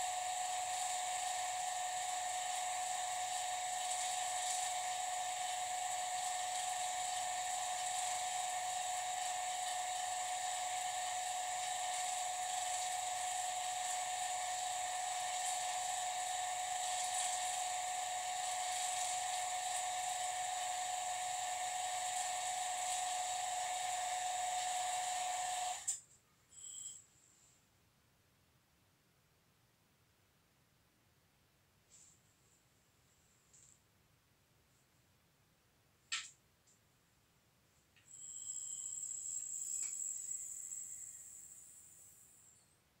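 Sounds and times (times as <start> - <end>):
vacuum pump high whine: 0.0 - 26.0.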